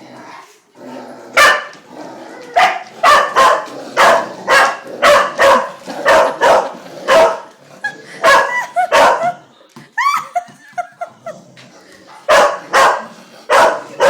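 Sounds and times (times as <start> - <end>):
dog barking loudly: 1.4 - 1.8, 2.6 - 7.5, 8.2 - 9.4, 12.3 - 14.0.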